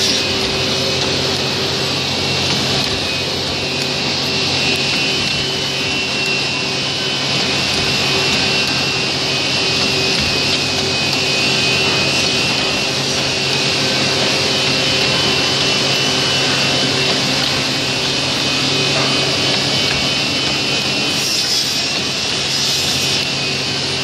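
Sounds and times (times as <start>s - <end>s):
drilling machine humming: 0.0s - 24.0s
high motor whine: 0.0s - 24.0s.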